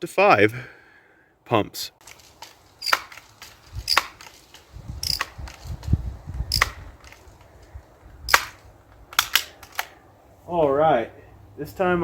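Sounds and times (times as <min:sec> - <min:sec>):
air gun pump lever clicking: 0:05.0 - 0:05.6, 0:06.5 - 0:07.2, 0:08.3 - 0:09.9.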